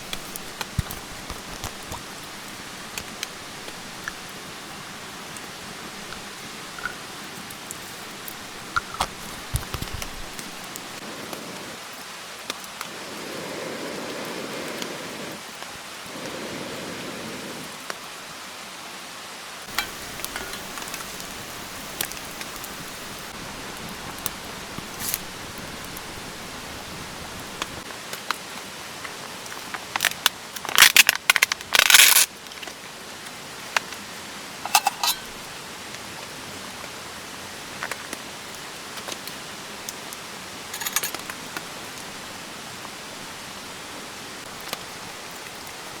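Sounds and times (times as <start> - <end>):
water hissing: 19.7 - 27.9
burst of crackling clicks: 30.8 - 32.3.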